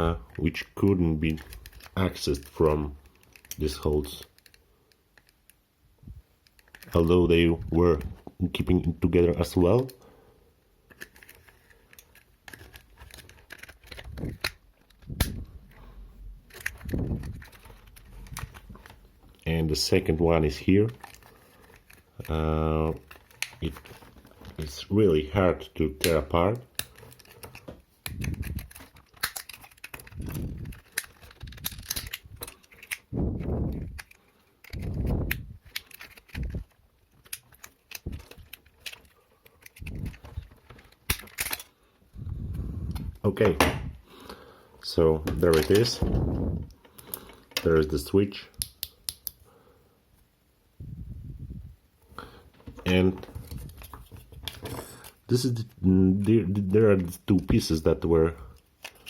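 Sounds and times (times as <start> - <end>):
plastic clicks and scrapes: 1.3 - 5.6, 6.4 - 8.4, 10.8 - 19.4, 20.6 - 24.8, 26.0 - 43.6, 45.3 - 47.8, 52.5 - 55.3, 58.5 - 59.0
plastic handling scuffle: 10.9 - 25.3, 26.1 - 43.6, 45.3 - 47.9, 52.5 - 55.6
sharp plastic click: 12.0 - 15.5, 48.5 - 49.4.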